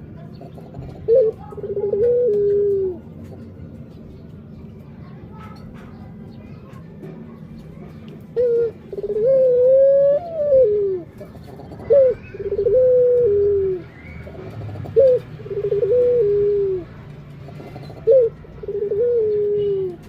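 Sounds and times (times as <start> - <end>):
dove cooing: 0.0 - 3.4, 7.8 - 20.0.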